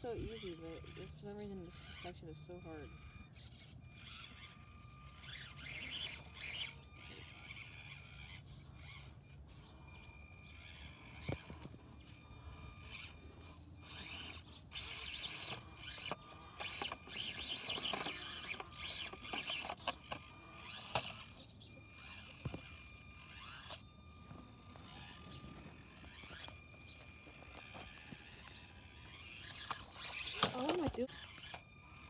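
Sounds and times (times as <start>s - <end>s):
small electric motor whining: 0.0s - 32.0s
tires scraping and scrabbling: 3.3s - 32.0s.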